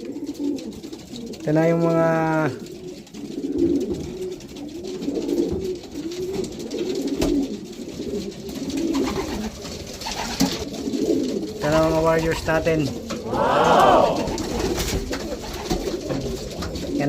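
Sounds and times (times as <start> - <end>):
pigeons cooing: 0.0 - 1.5, 2.6 - 11.6, 14.2 - 17.0.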